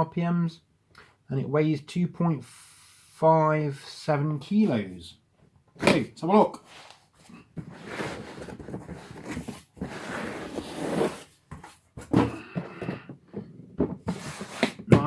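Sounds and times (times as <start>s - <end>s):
box rustling and scraping: 6.6s - 15.0s.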